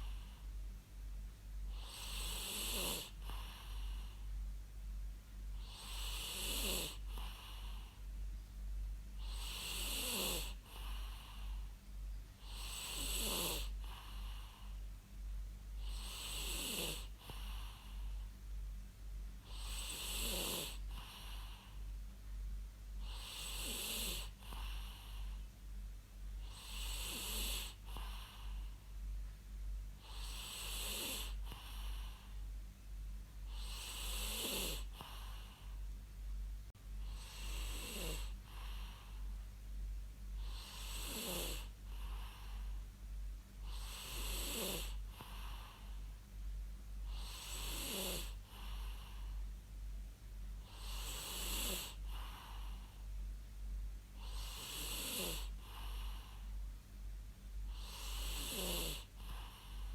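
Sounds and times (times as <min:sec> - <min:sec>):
person snoring: 0:01.7 - 0:04.1, 0:05.6 - 0:07.9, 0:09.2 - 0:11.6, 0:12.4 - 0:14.8, 0:15.8 - 0:18.2, 0:19.5 - 0:21.7, 0:23.0 - 0:25.3, 0:26.4 - 0:28.6, 0:30.0 - 0:32.3, 0:33.5 - 0:35.7, 0:37.0 - 0:39.2, 0:40.4 - 0:42.7, 0:43.6 - 0:46.0, 0:47.1 - 0:49.3, 0:50.7 - 0:52.9, 0:54.2 - 0:56.4, 0:57.7 - 0:59.9.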